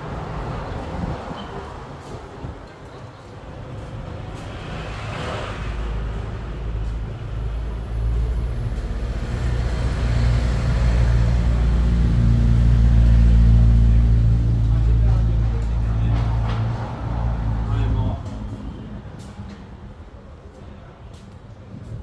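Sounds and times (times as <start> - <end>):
vehicle engine rumbling: 4.0 - 20.1.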